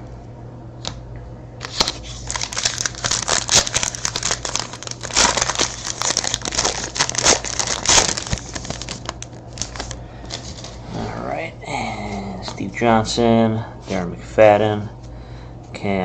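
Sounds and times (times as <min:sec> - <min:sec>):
wrapper tearing and crinkling: 0:01.6 - 0:10.4.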